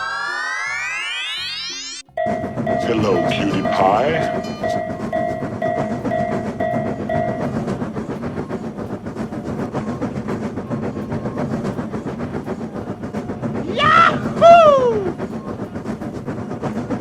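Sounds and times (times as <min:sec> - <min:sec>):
railroad crossing bell ringing: 0:02.0 - 0:08.7
train wheels clickety-clack: 0:02.2 - 0:17.0.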